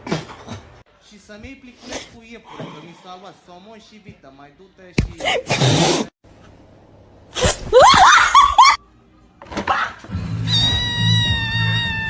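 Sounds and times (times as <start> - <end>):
cat yowling: 9.7 - 12.0.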